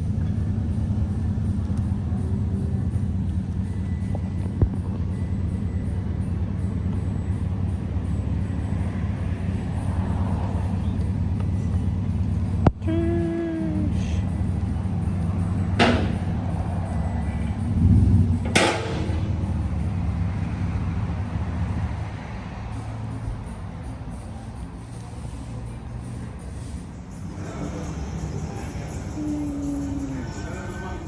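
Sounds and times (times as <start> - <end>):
vehicle engine rumbling: 0.0 - 31.0.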